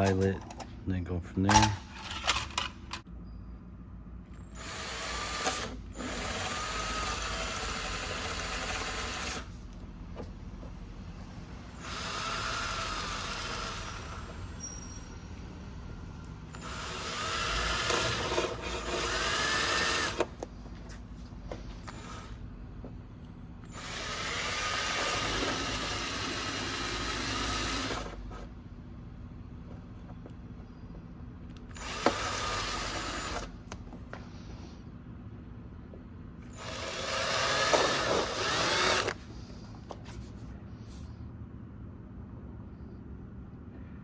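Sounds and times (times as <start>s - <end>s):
power drill boring holes: 4.5s - 9.5s, 11.7s - 15.0s, 16.5s - 20.3s, 21.9s - 22.4s, 23.6s - 28.4s, 31.7s - 33.5s, 36.5s - 39.2s.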